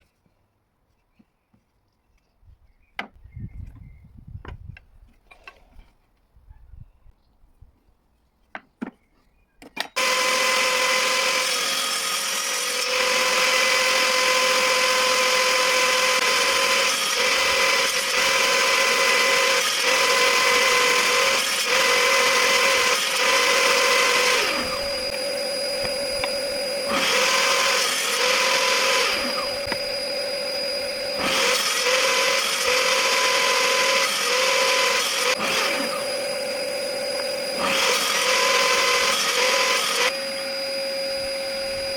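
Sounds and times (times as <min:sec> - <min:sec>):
table saw whining: 0:09.9 - 0:41.9.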